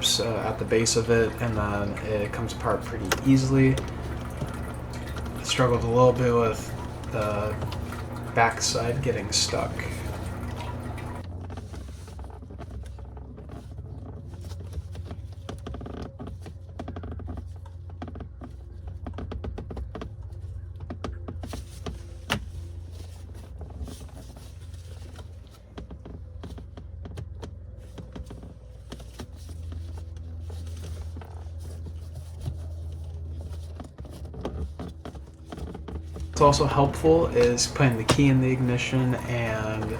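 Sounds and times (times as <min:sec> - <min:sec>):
steady low hum: 0:00.0 - 0:11.3, 0:36.3 - 0:39.9.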